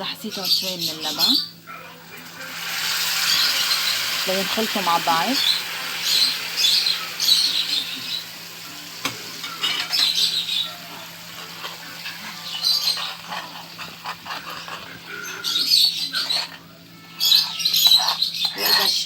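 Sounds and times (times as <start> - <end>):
bird squawking and chirping: 0.2 - 1.9, 3.2 - 8.3, 9.5 - 19.0
light sizzle in a pan: 1.0 - 14.7.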